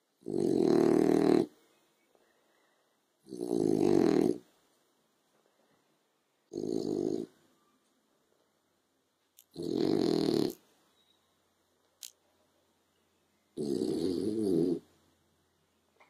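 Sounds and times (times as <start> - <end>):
dog snoring: 0.2 - 1.5, 3.2 - 4.4, 6.5 - 7.4, 9.5 - 10.6, 13.6 - 14.9.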